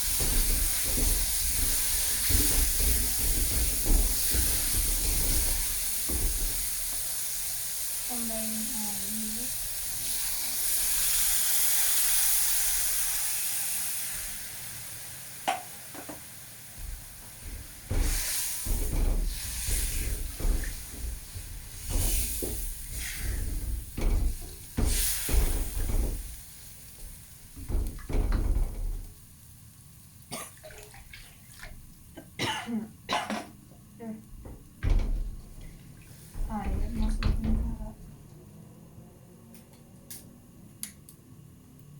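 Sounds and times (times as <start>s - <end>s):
paste sizzling in a frying pan: 0.0s - 28.0s
water splashing in a pan: 0.0s - 29.3s, 30.4s - 32.1s.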